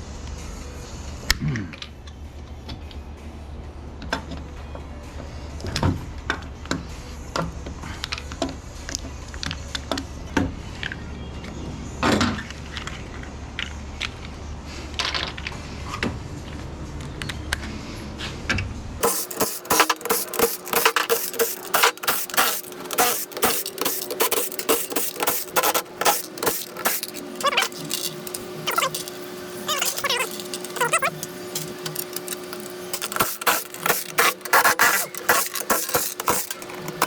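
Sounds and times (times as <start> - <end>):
metal clicking and clattering: 19.0 - 37.0.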